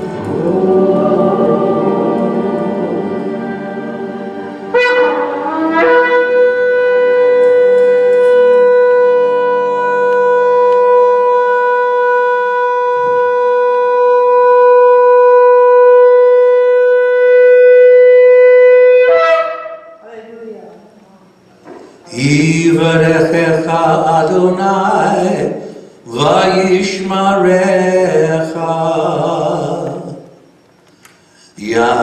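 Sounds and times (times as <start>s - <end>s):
shofar blast: 0.0s - 20.0s
sung worship: 0.0s - 32.0s.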